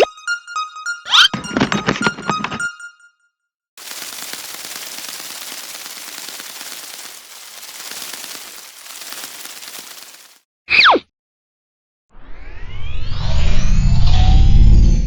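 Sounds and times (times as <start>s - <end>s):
rapid crackling rattle: 3.8s - 10.4s.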